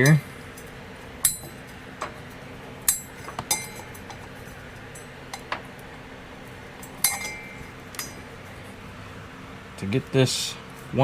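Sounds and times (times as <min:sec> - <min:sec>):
metal tools clinking together: 0:01.2 - 0:01.7, 0:02.9 - 0:04.3, 0:06.8 - 0:08.2.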